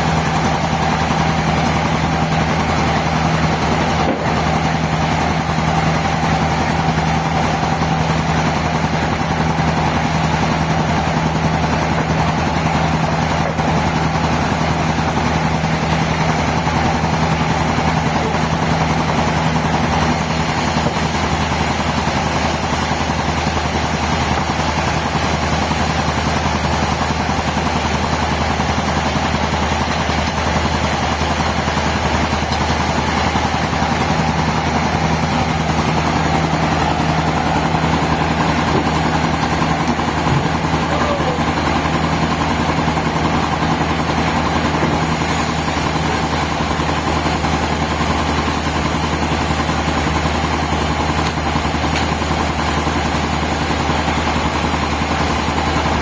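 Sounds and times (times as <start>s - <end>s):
high steady machine whine: 0.0s - 56.0s
sawmill machinery low hum: 0.0s - 56.0s.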